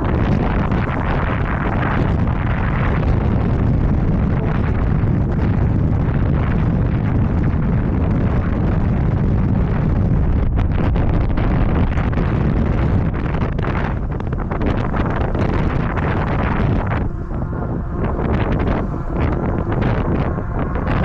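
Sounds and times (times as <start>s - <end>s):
wind buffeting microphone: 0.0s - 21.0s.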